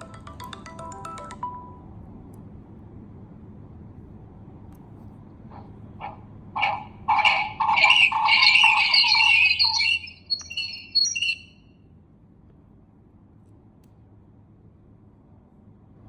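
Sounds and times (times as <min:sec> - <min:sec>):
phone ringtone high notes: 0:00.0 - 0:01.8, 0:07.3 - 0:11.4.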